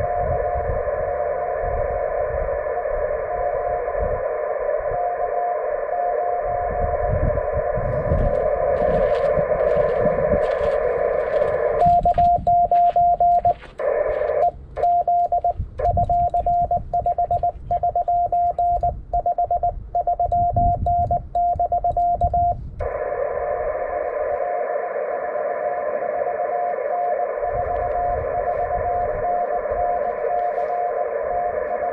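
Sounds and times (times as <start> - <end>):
radio receiver hiss: 0.0 - 19.8, 22.7 - 31.9
morse code beeping: 7.7 - 22.6, 26.2 - 31.9.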